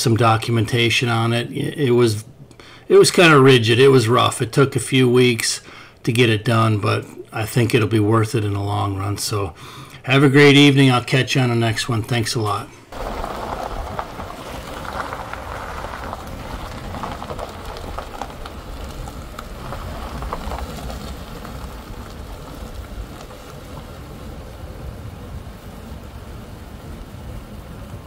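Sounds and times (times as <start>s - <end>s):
tyres crackling on surface: 11.8s - 28.0s
low engine and road rumble: 13.0s - 28.0s.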